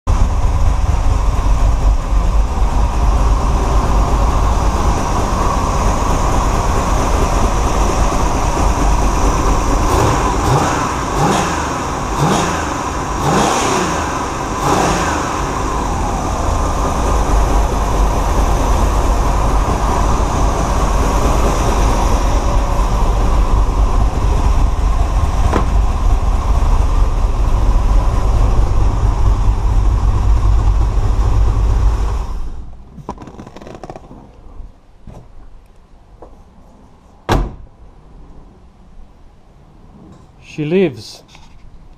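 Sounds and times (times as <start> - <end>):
vehicle engine revving: 0.1 - 32.3.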